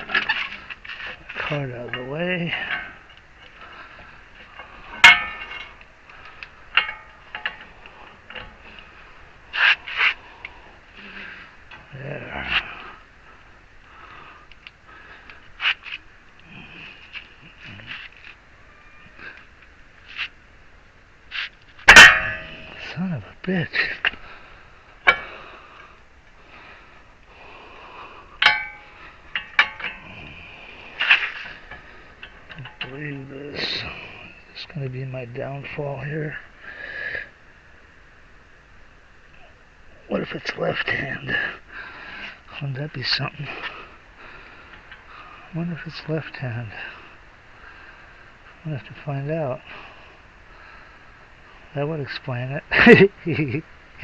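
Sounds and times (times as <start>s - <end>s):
metal tools clanking: 0.0s - 10.1s, 21.8s - 23.1s, 25.0s - 25.5s, 28.4s - 34.0s
faint steady hiss: 0.0s - 54.0s
sharp metal strikes ringing: 4.9s - 5.8s, 21.9s - 23.0s, 28.4s - 30.2s.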